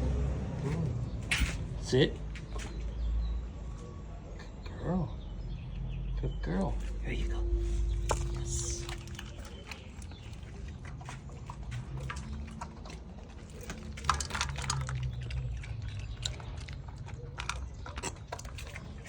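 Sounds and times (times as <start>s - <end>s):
dogs chewing food: 6.7s - 19.0s.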